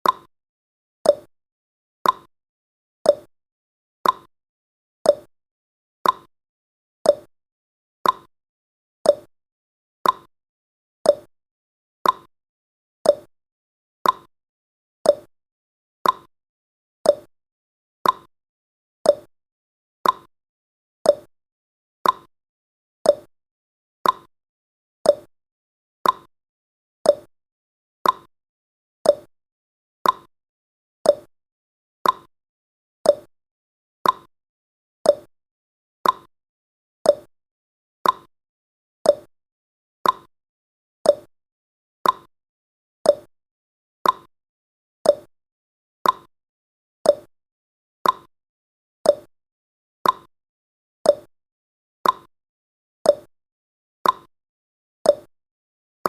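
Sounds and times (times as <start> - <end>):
timer ticking pops: 0.0 - 0.3, 1.0 - 1.3, 2.0 - 2.3, 3.0 - 3.3, 4.0 - 4.3, 5.0 - 5.3, 6.0 - 6.3, 7.0 - 7.3, 8.0 - 8.3, 9.0 - 9.3, 10.0 - 10.3, 11.0 - 11.3, 12.0 - 12.3, 13.0 - 13.3, 14.0 - 14.3, 15.0 - 15.3, 16.0 - 16.3, 17.0 - 17.3, 18.0 - 18.3, 19.0 - 19.3, 20.0 - 20.3, 21.0 - 21.3, 22.0 - 22.3, 23.0 - 23.3, 24.0 - 24.3, 25.0 - 25.3, 26.0 - 26.3, 27.0 - 27.3, 28.0 - 28.3, 29.0 - 29.3, 30.0 - 30.3, 31.0 - 31.3, 32.0 - 32.3, 33.0 - 33.3, 34.0 - 34.3, 35.0 - 35.3, 36.0 - 36.3, 37.0 - 37.3, 38.0 - 38.3, 39.0 - 39.3, 40.0 - 40.3, 41.0 - 41.3, 42.0 - 42.3, 43.0 - 43.3, 44.0 - 44.3, 45.0 - 45.3, 46.0 - 46.3, 47.0 - 47.3, 48.0 - 48.3, 49.0 - 49.3, 50.0 - 50.3, 51.0 - 51.3, 52.0 - 52.3, 53.0 - 53.3, 54.0 - 54.3, 55.0 - 55.3.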